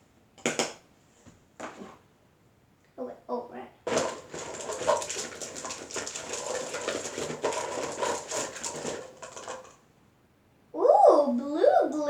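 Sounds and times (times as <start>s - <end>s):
plastic container crackling and rustling: 3.9s - 9.8s.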